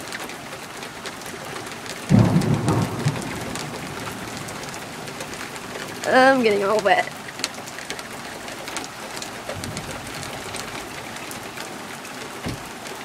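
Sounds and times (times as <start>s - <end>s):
steady rain falling: 0.0s - 13.0s.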